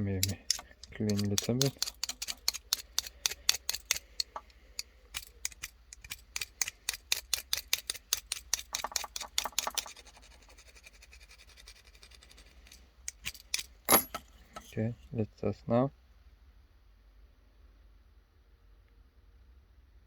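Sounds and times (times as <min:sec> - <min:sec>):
scratchy scraping strokes: 0:00.0 - 0:13.4.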